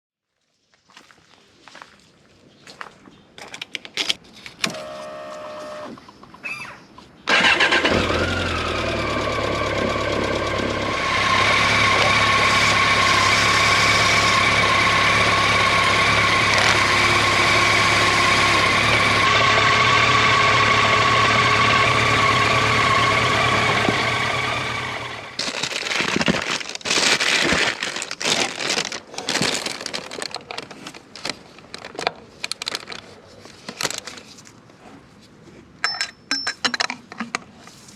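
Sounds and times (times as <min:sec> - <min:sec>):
motorcycle engine running: 0:07.4 - 0:25.4.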